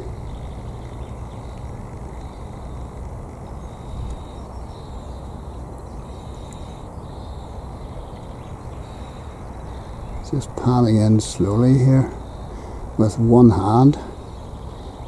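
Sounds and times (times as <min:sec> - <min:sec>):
faint high-pitched calls: 0:00.0 - 0:00.8
wind buffeting microphone: 0:00.0 - 0:15.0.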